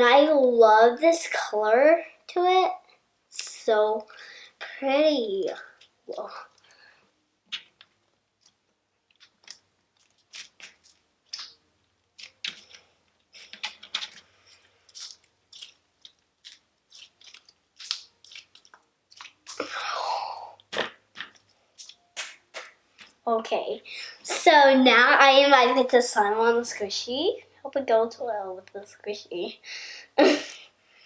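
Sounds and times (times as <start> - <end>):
slime squishing with sticky clicks: 7.5 - 14.2
slime squelch: 7.5 - 23.6.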